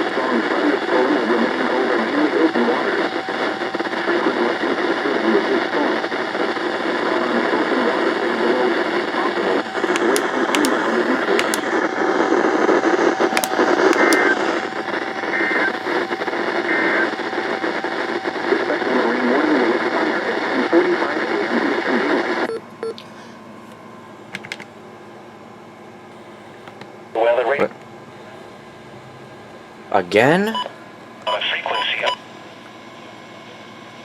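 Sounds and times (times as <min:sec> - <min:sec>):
radio hiss and static: 0:00.0 - 0:22.5, 0:26.2 - 0:28.6, 0:31.3 - 0:32.2
clicks and pops: 0:09.9 - 0:11.7, 0:13.3 - 0:14.3
weak radio broadcast: 0:13.4 - 0:17.2.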